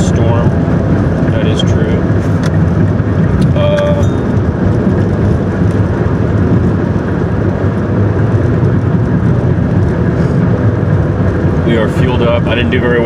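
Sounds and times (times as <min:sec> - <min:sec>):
car road and wind noise: 0:00.0 - 0:13.0.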